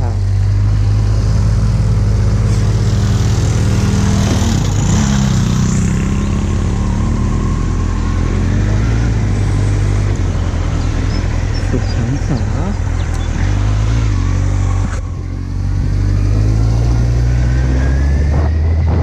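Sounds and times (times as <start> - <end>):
motorcycle engine running: 0.0 - 17.2
wind noise on microphone: 14.6 - 19.0.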